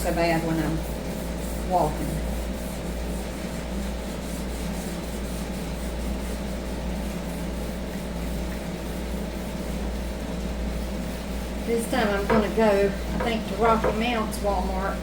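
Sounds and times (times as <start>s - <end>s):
hand rubbing wooden board: 10.2s - 14.9s.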